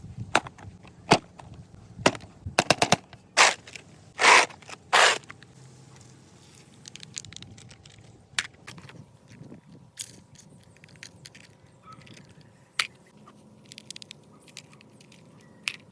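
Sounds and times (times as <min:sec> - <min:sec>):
noisy scraping bursts: 0:03.4 - 0:06.8
packaging clicks and snaps: 0:13.6 - 0:15.9.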